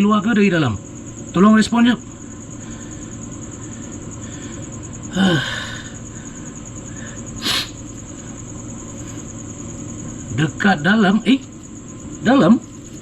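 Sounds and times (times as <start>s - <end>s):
crickets trilling: 0.0s - 13.0s
brief hiss: 7.4s - 7.8s.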